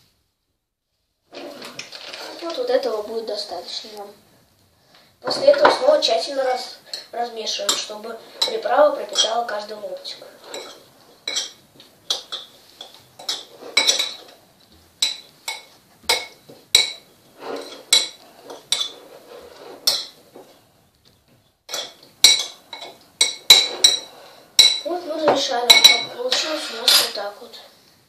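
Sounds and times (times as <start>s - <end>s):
utensil clinking against plate: 21.7s - 27.2s.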